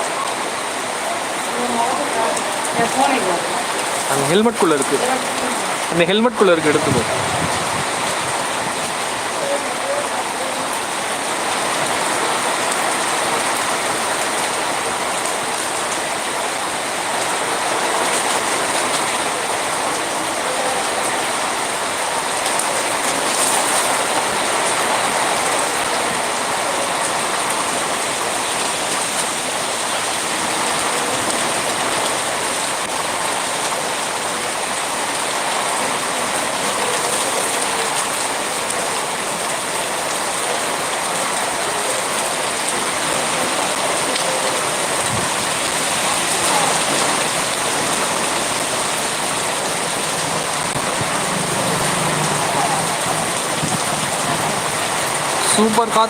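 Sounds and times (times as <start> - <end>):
heavy rain hissing: 0.0 - 56.0
strong wind: 6.6 - 9.5, 44.6 - 55.1.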